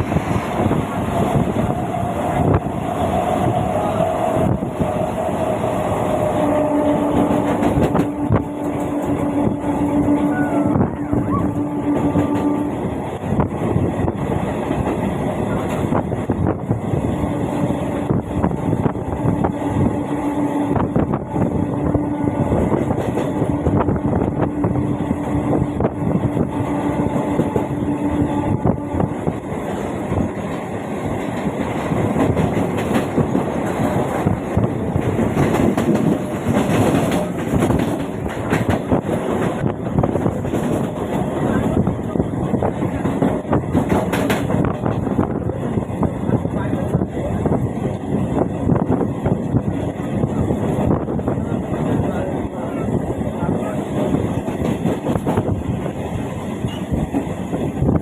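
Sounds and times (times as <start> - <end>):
train rumbling on tracks: 0.0 - 58.0.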